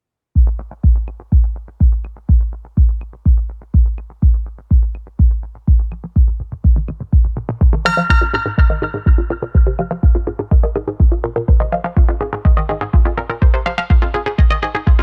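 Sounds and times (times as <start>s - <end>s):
heavy kick drum: 0.4s - 15.0s
bright synthesizer chord: 7.9s - 10.8s.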